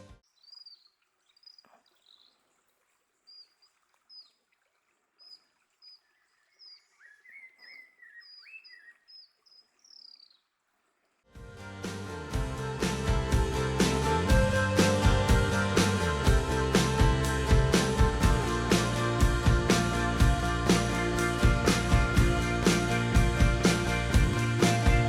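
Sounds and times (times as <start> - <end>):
high downward bird chirps: 5.2 - 10.4.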